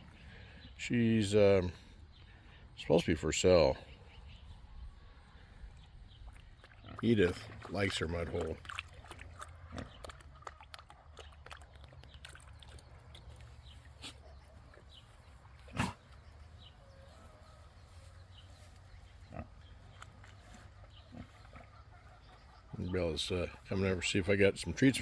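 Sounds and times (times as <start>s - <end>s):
pig wallowing in mud: 5.0s - 25.0s
pig grunting softly: 15.6s - 16.2s.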